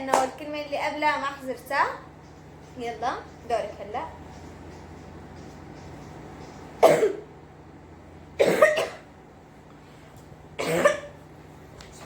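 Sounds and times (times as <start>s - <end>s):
woman coughing: 6.8s - 7.3s, 8.4s - 9.1s, 10.6s - 11.2s.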